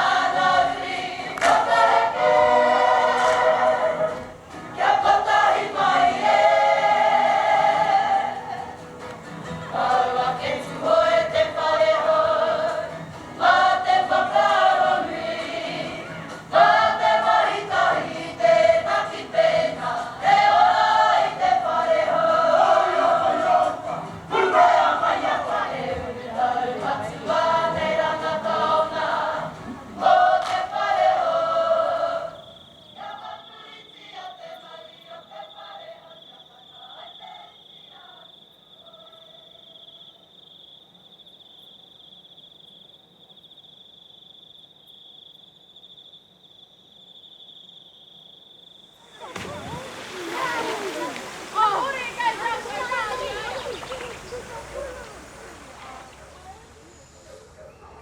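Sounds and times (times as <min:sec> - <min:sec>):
group singing in chorus: 0:00.0 - 0:39.6
crickets chirring: 0:00.0 - 0:58.0
faint voices: 0:49.0 - 0:58.0.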